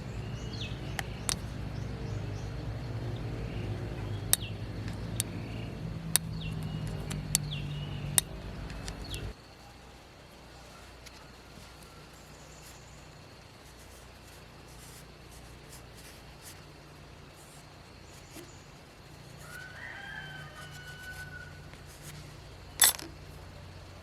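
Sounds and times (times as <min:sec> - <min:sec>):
birds chirping: 0:00.0 - 0:24.0
low engine hum: 0:00.0 - 0:24.0
sharp clicks: 0:04.2 - 0:09.4.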